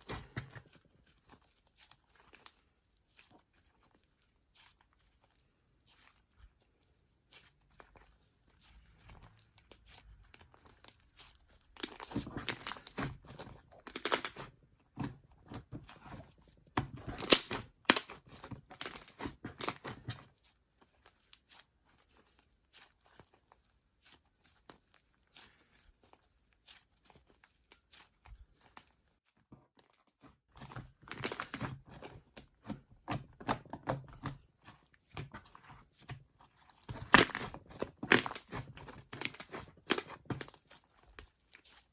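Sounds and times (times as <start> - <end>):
slime crackling and popping: 9.1 - 20.2, 30.6 - 36.2, 36.8 - 41.9.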